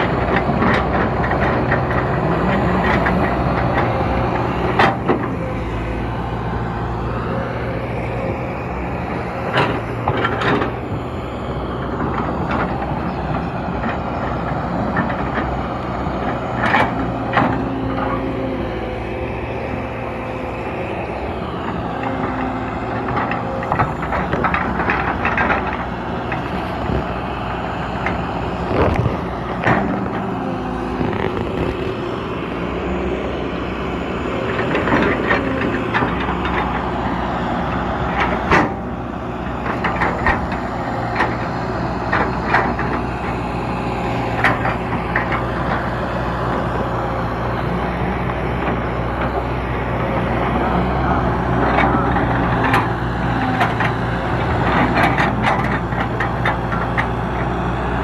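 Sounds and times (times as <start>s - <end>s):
heavy machine engine running: 0.0s - 58.0s
sharp clanks and knocks: 34.4s - 46.7s.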